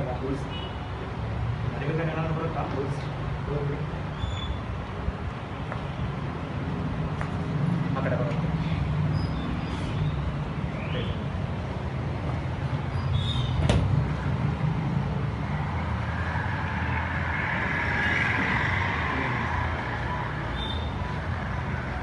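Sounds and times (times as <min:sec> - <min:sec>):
rushing noise: 0:13.9 - 0:22.0.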